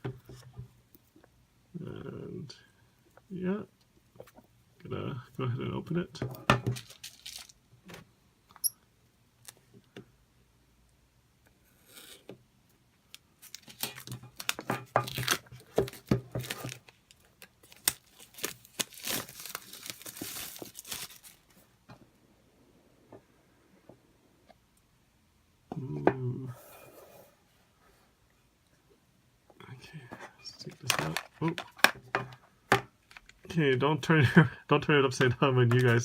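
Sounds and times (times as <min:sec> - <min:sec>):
shrink-wrap crinkling and tearing: 0:06.7 - 0:07.6, 0:13.4 - 0:21.6.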